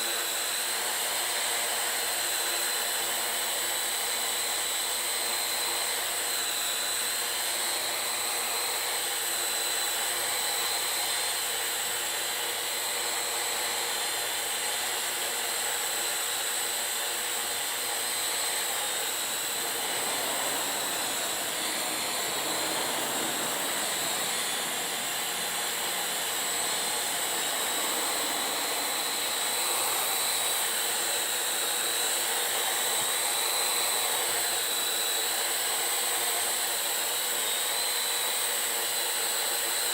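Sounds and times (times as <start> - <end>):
drone propellers whirring: 16.2 - 33.5.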